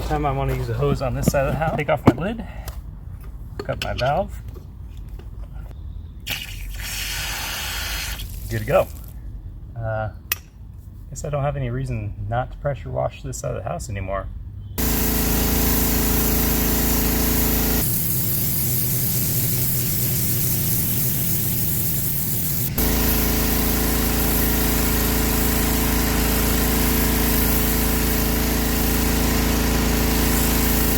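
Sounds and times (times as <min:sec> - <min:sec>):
water spraying: 0:06.3 - 0:09.1, 0:14.8 - 0:30.9
pressure washer engine running: 0:14.8 - 0:30.9.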